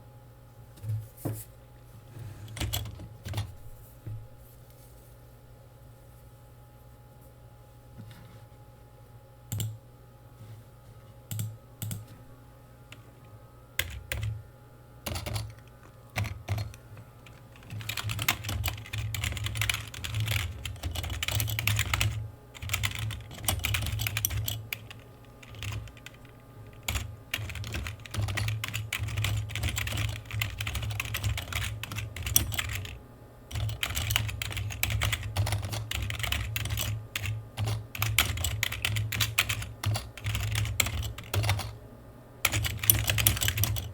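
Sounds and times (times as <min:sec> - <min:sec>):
computer keyboard typing: 0:02.6 - 0:03.5, 0:11.3 - 0:12.1, 0:13.8 - 0:14.4, 0:15.0 - 0:41.8, 0:42.5 - 0:43.9.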